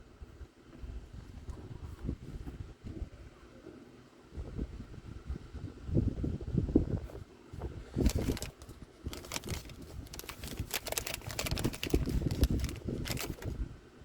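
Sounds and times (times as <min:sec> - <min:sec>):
crinkling rustles: 0:07.9 - 0:13.6.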